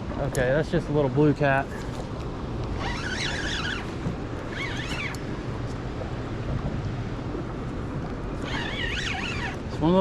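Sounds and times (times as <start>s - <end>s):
river water: 0.0s - 10.0s
wind buffeting microphone: 0.0s - 10.0s
high-pitched whistling calls: 8.4s - 9.6s.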